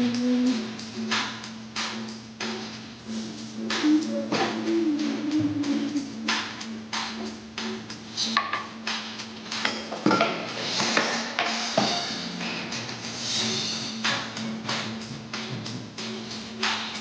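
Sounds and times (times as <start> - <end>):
music playing: 0.0 - 17.0
dishes and cutlery clattering: 9.6 - 12.1.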